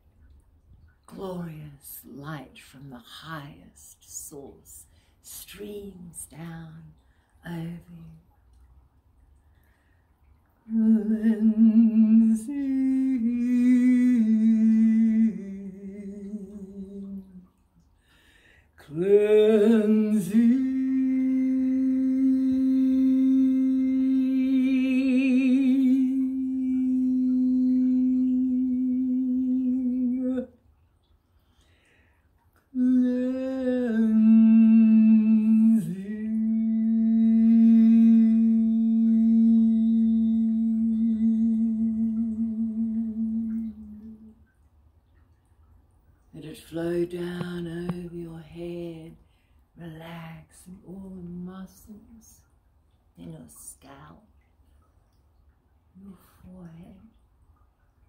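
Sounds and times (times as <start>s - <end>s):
person humming: 10.7s - 17.4s, 18.8s - 30.5s, 32.7s - 44.4s.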